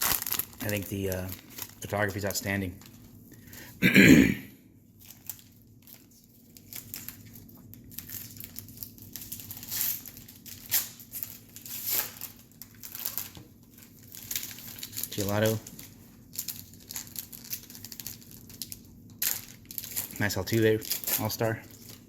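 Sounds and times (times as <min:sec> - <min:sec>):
wrappers tearing and crinkling: 0:00.0 - 0:03.6, 0:05.0 - 0:22.0
cards rustling: 0:08.0 - 0:22.0.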